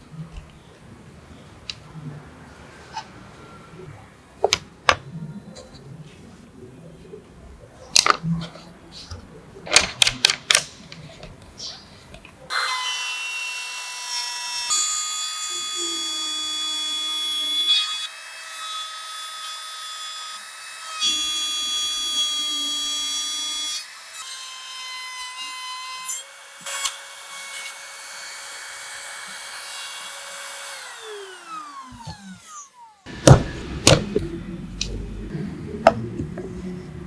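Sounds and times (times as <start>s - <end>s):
power tool motor whining: 30.5s - 37.0s
sharp knocks: 33.1s - 34.3s.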